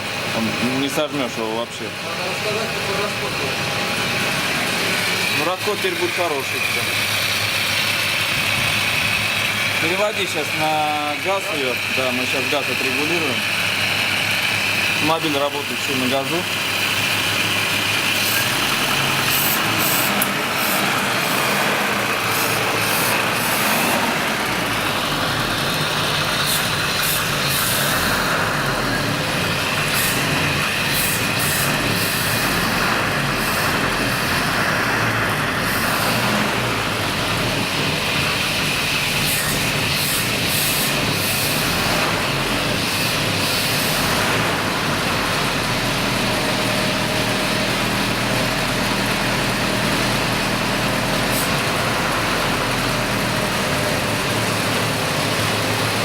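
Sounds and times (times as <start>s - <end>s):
car engine idling: 0.0s - 56.0s
hiss: 26.3s - 28.3s, 29.6s - 32.7s, 38.5s - 41.9s.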